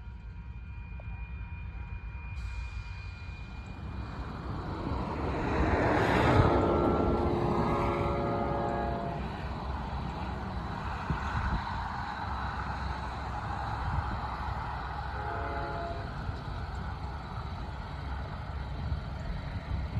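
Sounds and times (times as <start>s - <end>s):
diesel locomotive engine rumble: 0.0s - 19.9s
locomotive air horn chord: 4.8s - 10.2s, 15.0s - 16.4s.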